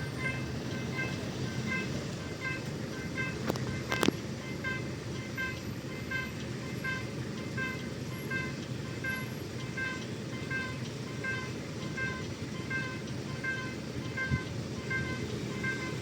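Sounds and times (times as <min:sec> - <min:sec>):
diesel locomotive rumble: 0:00.0 - 0:16.0.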